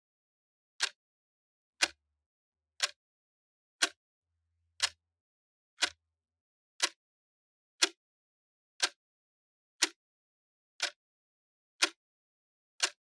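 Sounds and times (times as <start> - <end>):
clock ticking: 12.8 - 13.0.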